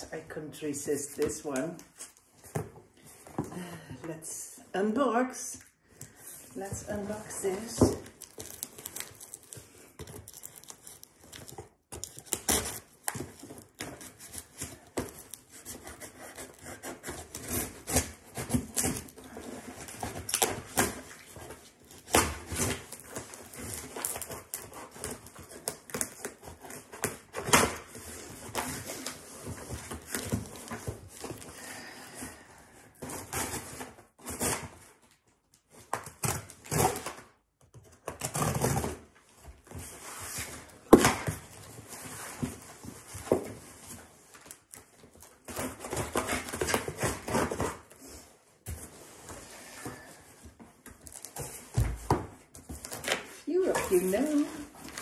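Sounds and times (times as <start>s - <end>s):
cardboard and tape tearing: 6.6s - 31.7s, 33.0s - 55.0s
packing material crackling: 8.1s - 13.8s.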